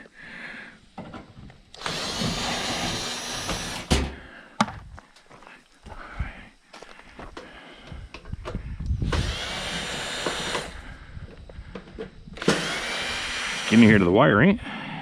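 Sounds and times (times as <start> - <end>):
cordless drill whining: 1.7 - 4.2, 8.9 - 11.0, 11.7 - 14.4
tool and parts clicking: 11.7 - 13.1.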